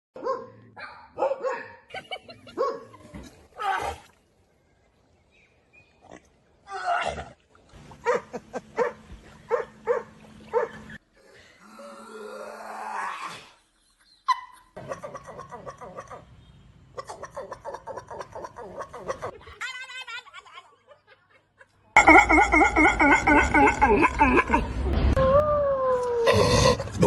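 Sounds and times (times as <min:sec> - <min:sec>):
dog barking and yelping: 0:00.2 - 0:01.8, 0:08.0 - 0:10.8.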